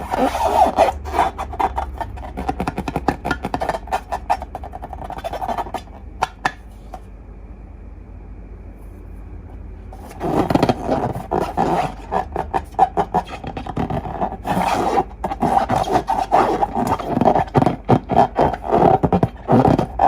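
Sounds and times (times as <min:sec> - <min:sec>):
slime squelching against balloons: 0:00.0 - 0:06.4, 0:10.0 - 0:20.0
faint hum: 0:00.0 - 0:20.0.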